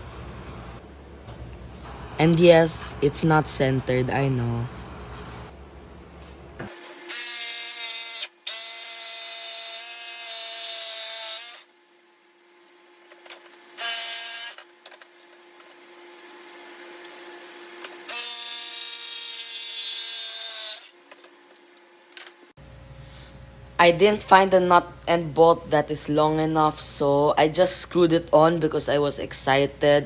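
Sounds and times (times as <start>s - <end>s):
electric drill drilling into wood: 6.9s - 11.7s, 18.1s - 20.9s.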